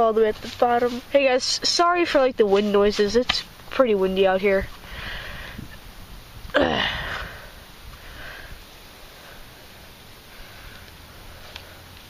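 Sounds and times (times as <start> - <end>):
wind buffeting microphone: 4.6 - 8.6.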